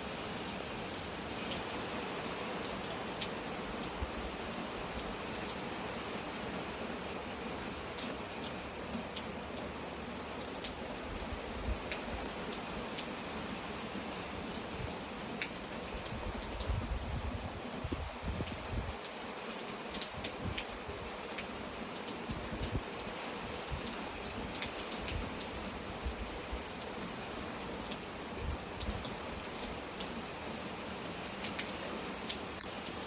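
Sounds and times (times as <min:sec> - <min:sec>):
steady rain falling: 0:00.0 - 0:33.0.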